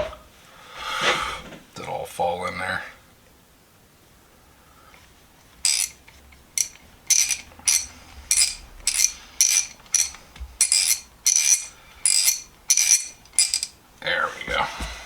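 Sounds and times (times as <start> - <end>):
socket ratchet clicking: 5.6 - 13.8.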